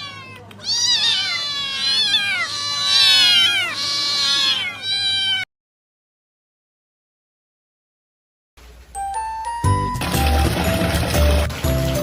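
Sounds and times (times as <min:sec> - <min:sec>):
cat meowing loudly: 0:00.0 - 0:05.5.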